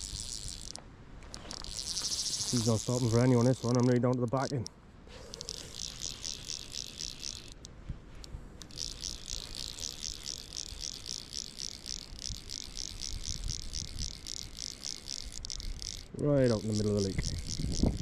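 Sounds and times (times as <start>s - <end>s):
fly reel ratcheting whirr: 0.0s - 18.0s
reel clicks: 0.0s - 18.0s.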